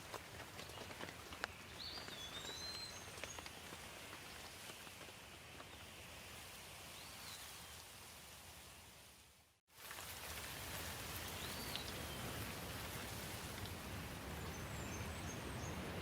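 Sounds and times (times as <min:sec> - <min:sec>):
light steady rain: 0:00.0 - 0:16.0.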